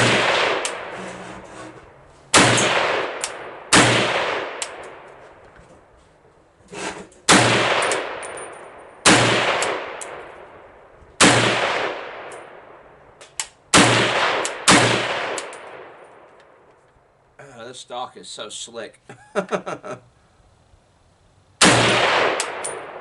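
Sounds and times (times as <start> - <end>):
rifle shots echoing: 0.0 - 0.9, 2.3 - 5.1, 7.3 - 12.8, 13.7 - 16.3, 21.6 - 23.0.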